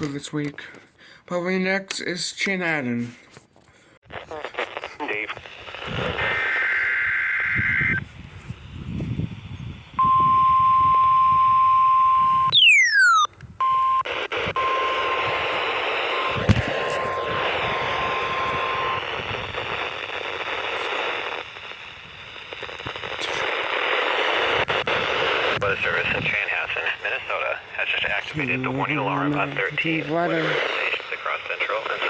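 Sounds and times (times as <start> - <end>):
radio static hiss: 4.1 - 11.2, 14.0 - 32.0
steady alarm tone: 14.6 - 19.1.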